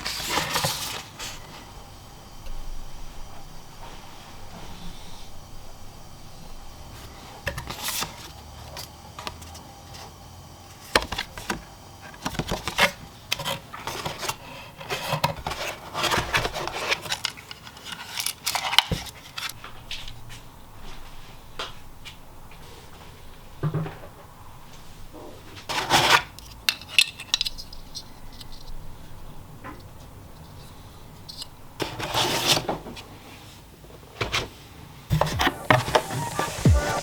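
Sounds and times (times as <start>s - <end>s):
packaging rustling: 0.0s - 1.4s.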